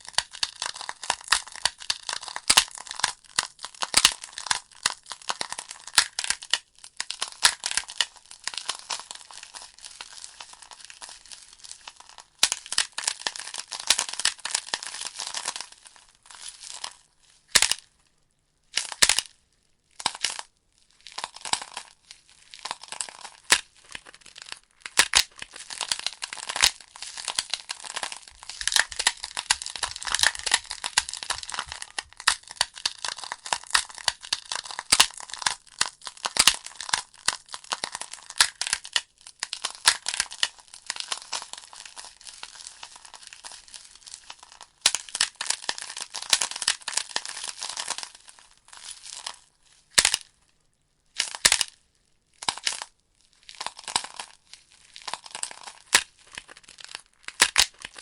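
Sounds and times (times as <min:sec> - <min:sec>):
wood fire crackling: 0:27.3 - 0:33.8.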